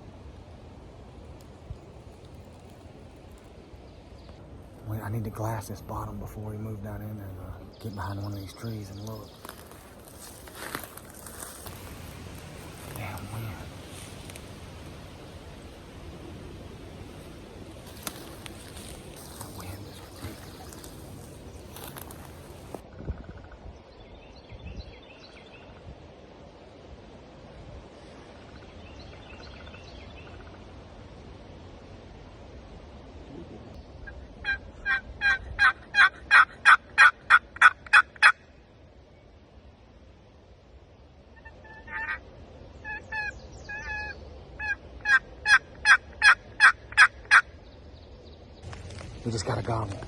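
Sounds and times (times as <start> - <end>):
songbird chirping: 1.4 - 26.0, 40.9 - 50.0
wind buffeting microphone: 8.8 - 26.1
turkey yelping: 34.4 - 38.4, 41.4 - 42.2, 42.8 - 47.5.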